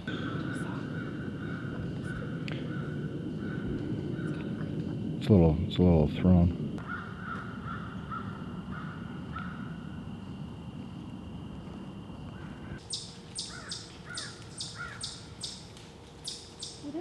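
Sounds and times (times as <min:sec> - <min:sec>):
harsh bird calls: 0:00.0 - 0:04.5, 0:12.4 - 0:17.0
high scratchy bird calls: 0:12.4 - 0:17.0
bird chirps: 0:12.8 - 0:17.0.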